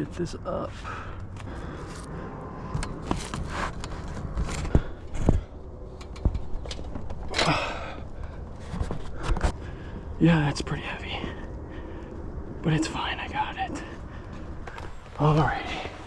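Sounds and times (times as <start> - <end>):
knocks and scrapes: 1.8 - 9.6.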